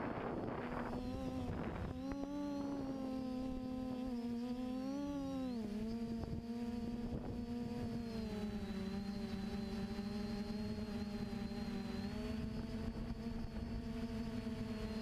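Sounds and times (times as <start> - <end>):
wind noise rumble: 0.0 - 2.9, 6.1 - 8.8
drone propellers buzzing: 0.0 - 15.0.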